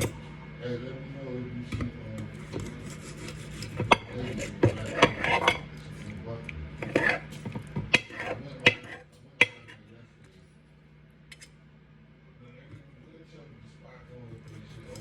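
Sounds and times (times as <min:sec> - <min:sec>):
dishes and utensils clattering: 0:03.6 - 0:05.7, 0:06.8 - 0:09.8.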